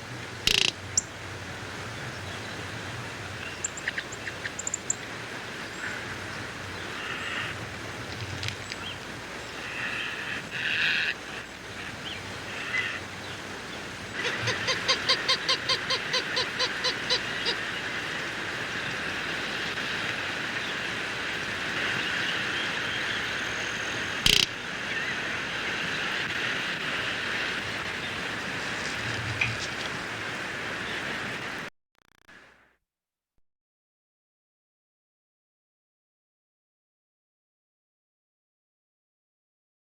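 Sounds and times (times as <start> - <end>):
steady outdoor hiss: 0.0 - 31.7
roadrunner calling: 0.3 - 13.1, 14.0 - 20.0, 21.8 - 26.1
sharp click: 0.5 - 0.7.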